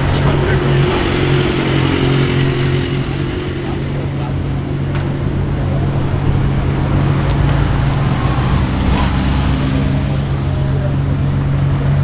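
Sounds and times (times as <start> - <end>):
car engine running at low revs: 0.0 - 12.0.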